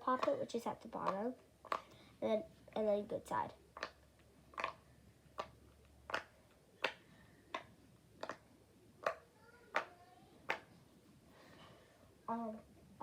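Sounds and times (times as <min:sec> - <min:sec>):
fidget toy bubbles popping: 0:00.1 - 0:02.0, 0:03.7 - 0:09.9.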